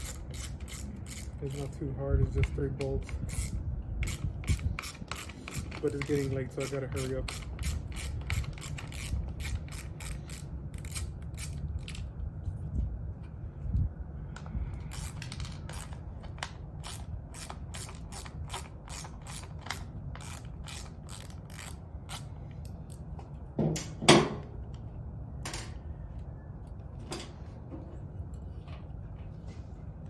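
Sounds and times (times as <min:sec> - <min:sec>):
ratchet wrench clicking: 0:00.0 - 0:01.8, 0:02.4 - 0:12.0, 0:14.9 - 0:23.0.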